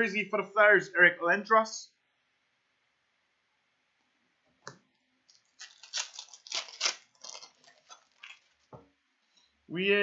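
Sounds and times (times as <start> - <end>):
foil wrapper tearing and crinkling: 5.3 - 8.7.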